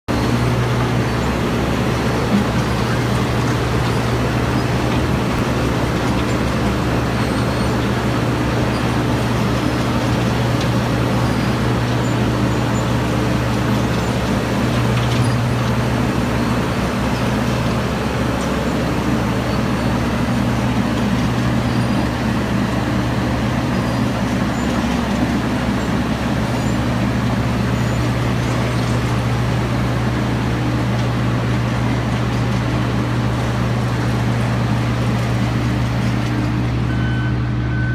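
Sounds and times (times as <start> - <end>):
milling machine diesel engine drone: 0.1 - 37.9.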